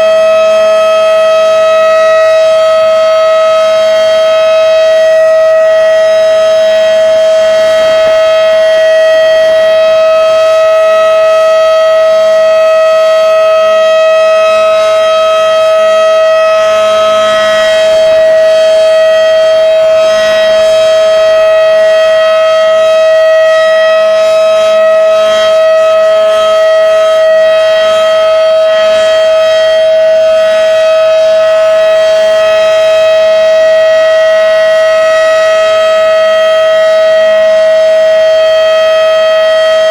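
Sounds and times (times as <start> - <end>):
outdoor warning siren steady tone: 0.0 - 39.9.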